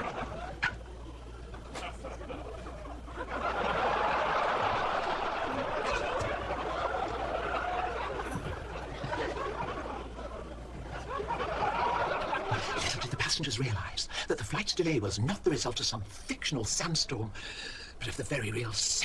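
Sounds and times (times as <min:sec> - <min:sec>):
studio audience laughing: 0:00.0 - 0:13.3.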